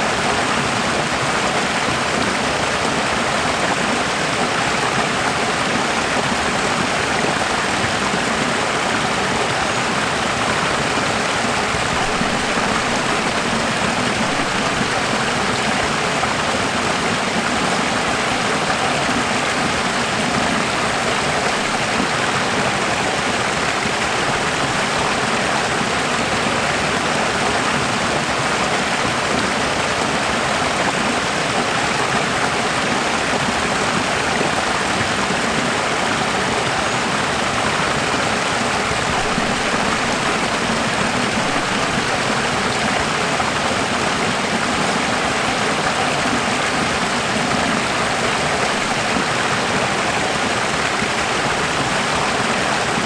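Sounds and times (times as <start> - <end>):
stream rushing: 0.0 - 53.0.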